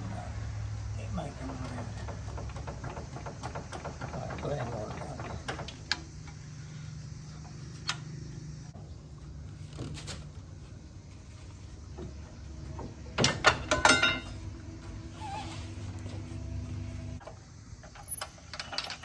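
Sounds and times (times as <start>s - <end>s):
loud metallic clanks and knocks: 1.1s - 6.0s, 12.1s - 15.0s
low hum: 10.4s - 17.2s.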